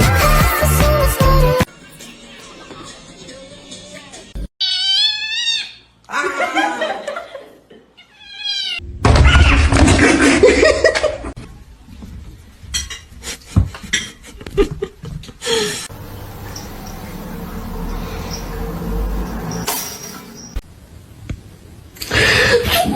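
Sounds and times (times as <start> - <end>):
loud laughter: 6.1 - 7.9, 9.8 - 11.4
cat meowing: 8.1 - 8.8.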